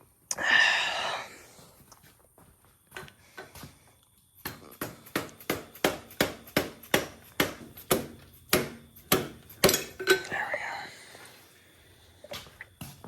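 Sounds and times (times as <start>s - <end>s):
hammer strikes: 4.4s - 10.2s.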